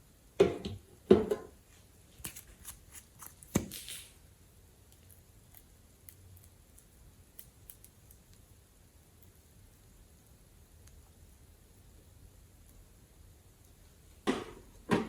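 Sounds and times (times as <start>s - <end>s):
sticky slime clicks and crackles: 4.9s - 8.4s.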